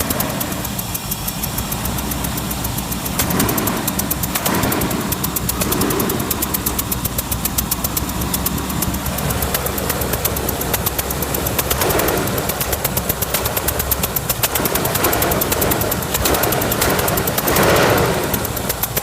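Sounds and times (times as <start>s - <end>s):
engine knocking: 0.0s - 19.0s
engine running: 0.0s - 19.0s.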